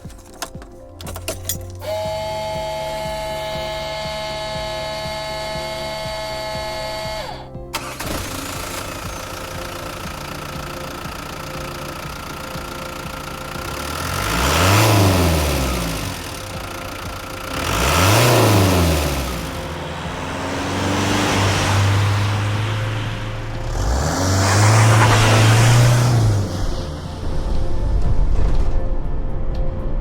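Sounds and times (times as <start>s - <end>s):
diesel engine idling and revving: 1.8s - 29.3s.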